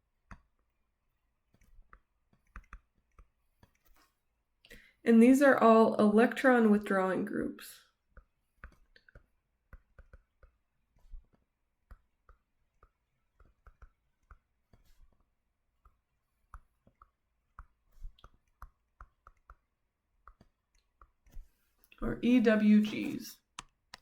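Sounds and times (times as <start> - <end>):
faint light clicks and taps: 8.1 - 22.0, 22.9 - 24.0.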